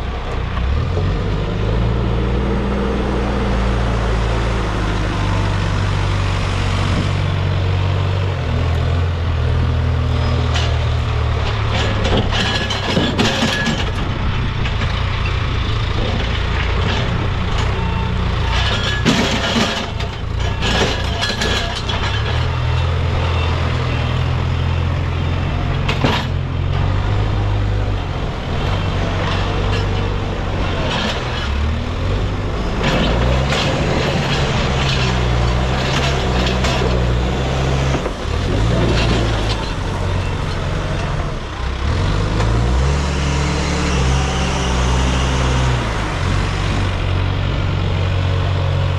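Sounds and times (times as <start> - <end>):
diesel engine running under load: 0.0 - 48.9
knocks and clatter: 10.1 - 41.4.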